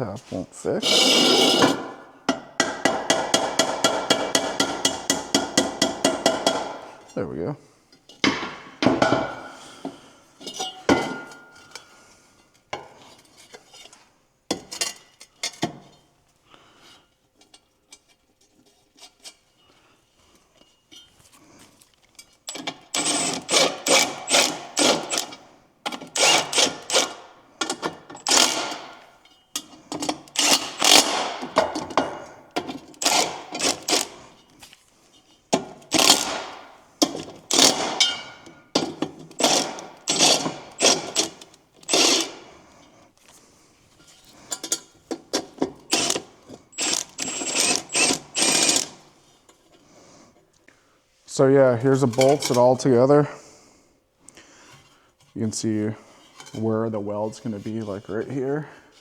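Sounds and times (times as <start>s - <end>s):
hand tool rasping strokes: 0.7s - 2.0s, 21.2s - 29.0s, 29.6s - 32.0s, 32.6s - 43.4s, 44.0s - 49.8s.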